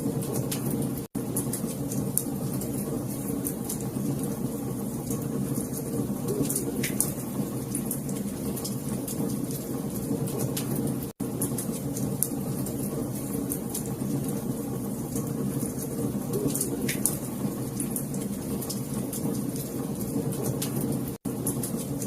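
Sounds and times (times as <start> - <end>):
low rumble of flames: 0.0 - 22.0
fire pops and snaps: 5.8 - 9.7, 10.3 - 14.4, 15.1 - 18.0.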